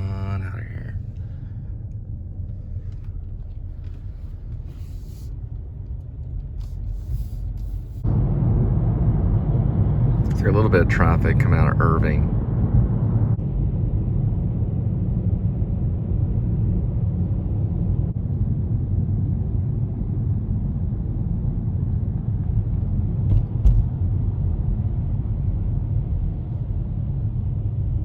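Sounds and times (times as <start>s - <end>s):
car cabin road and engine rumble: 0.0s - 28.0s
brief knock: 23.3s - 23.9s.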